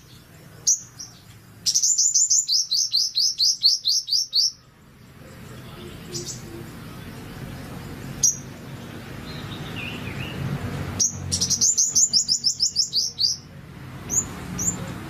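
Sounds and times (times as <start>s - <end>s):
high chirps: 0.0s - 4.7s, 7.7s - 10.4s, 11.0s - 14.9s
sunbird calling: 0.0s - 15.0s.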